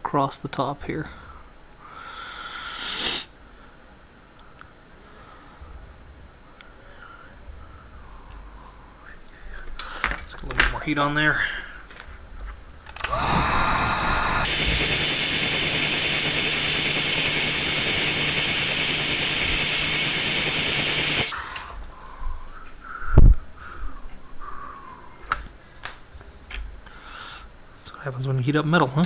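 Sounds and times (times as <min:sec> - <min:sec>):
heat gun blowing air: 0:02.2 - 0:03.3, 0:13.0 - 0:21.8.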